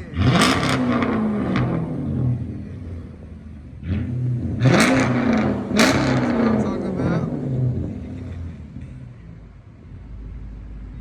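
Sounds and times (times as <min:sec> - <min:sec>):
car engine revving: 0:00.0 - 0:09.0.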